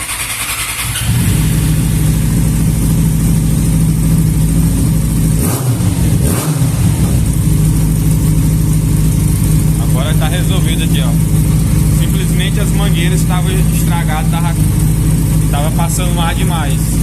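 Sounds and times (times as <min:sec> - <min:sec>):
motorcycle engine idling: 0:00.0 - 0:17.0.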